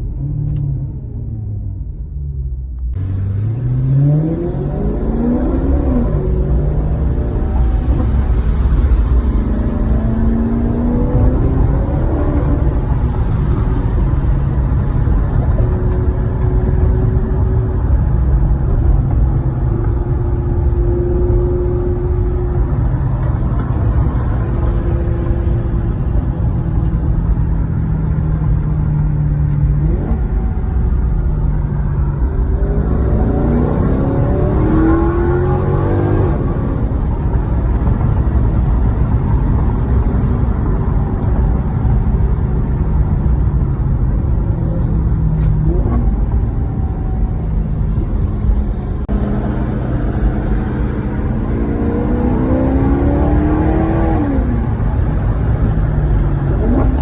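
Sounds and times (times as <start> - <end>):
car engine revving and shifting: 3.0 - 57.0.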